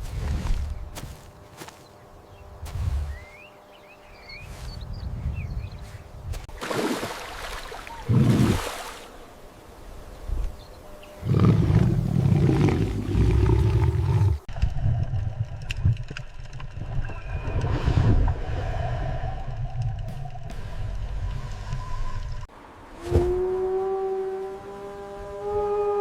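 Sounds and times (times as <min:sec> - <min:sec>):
large animal roaring growl: 0:11.2 - 0:14.5.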